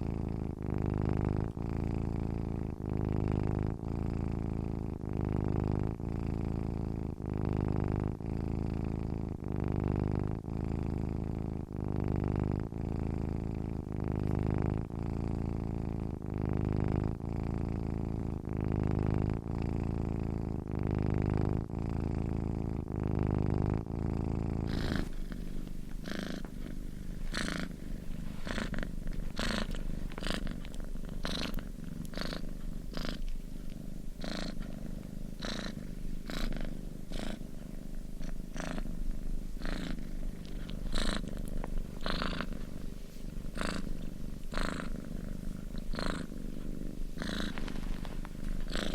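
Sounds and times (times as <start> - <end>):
cat purring: 0.0 - 48.9
airy breath hiss: 24.7 - 48.9.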